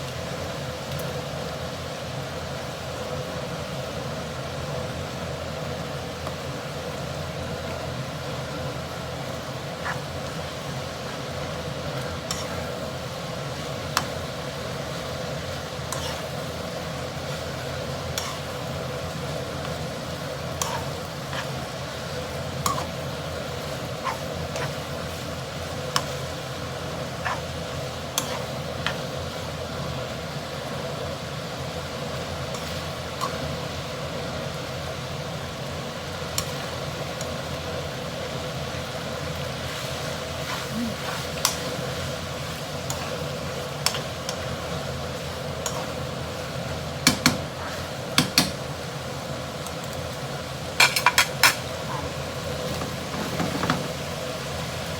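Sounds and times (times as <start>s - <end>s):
noodles frying in a pan: 0.0s - 54.9s.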